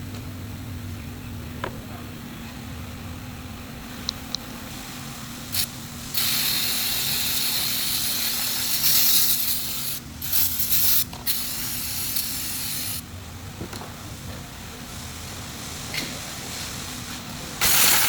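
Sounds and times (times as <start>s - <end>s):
pressurised spray hissing: 4.7s - 13.0s, 17.6s - 18.0s.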